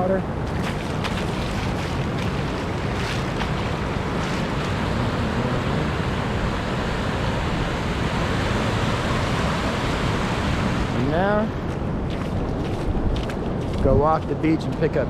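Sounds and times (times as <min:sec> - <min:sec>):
ocean surf breaking: 0:00.0 - 0:11.9
wind buffeting microphone: 0:00.0 - 0:15.0.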